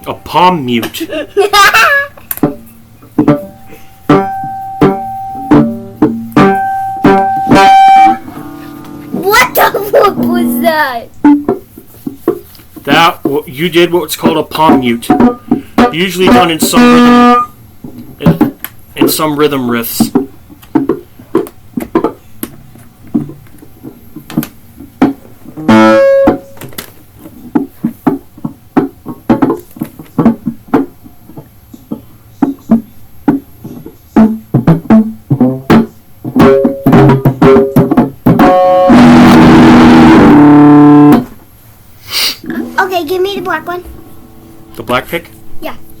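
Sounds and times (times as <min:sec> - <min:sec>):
distorted guitar chord: 0:03.2 - 0:09.2, 0:25.6 - 0:26.4, 0:38.4 - 0:41.2, 0:43.9 - 0:46.0
electric guitar notes: 0:03.2 - 0:09.2, 0:15.8 - 0:17.6, 0:25.6 - 0:26.6, 0:36.4 - 0:41.3, 0:43.8 - 0:46.0.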